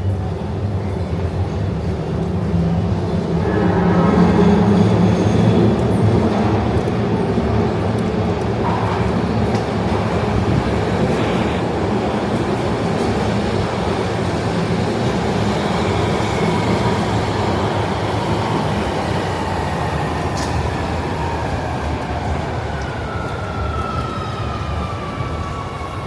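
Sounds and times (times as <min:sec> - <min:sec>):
electric train rumbling: 0:00.0 - 0:26.0.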